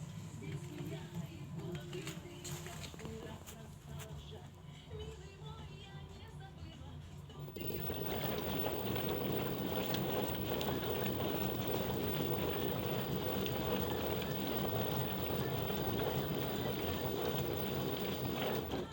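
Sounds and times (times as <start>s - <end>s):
washing machine running: 7.4s - 18.9s.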